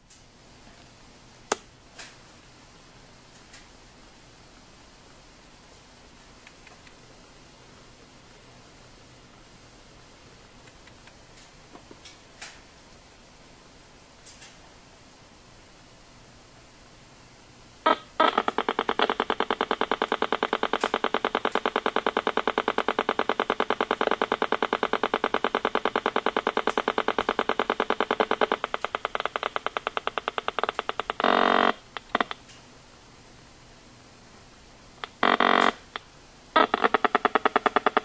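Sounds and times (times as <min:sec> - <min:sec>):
electronic buzz: 0:17.8 - 0:32.4, 0:35.0 - 0:38.0
rapid electronic clicks: 0:17.8 - 0:32.4, 0:35.0 - 0:38.0.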